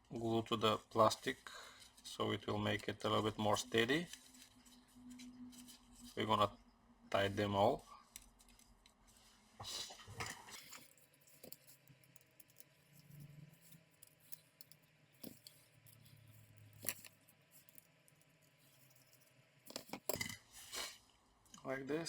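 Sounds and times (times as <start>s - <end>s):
small laptop parts clicking: 10.6s - 20.3s.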